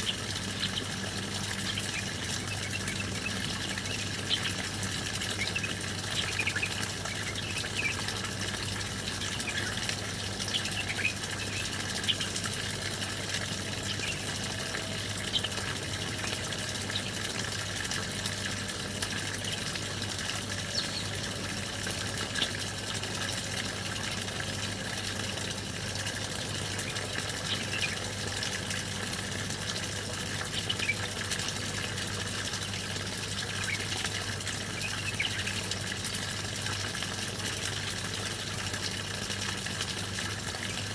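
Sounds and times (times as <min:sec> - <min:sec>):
songbirds chirping: 0:00.0 - 0:18.3, 0:18.9 - 0:22.9, 0:25.9 - 0:29.2, 0:32.7 - 0:35.8
running water: 0:00.0 - 0:40.9.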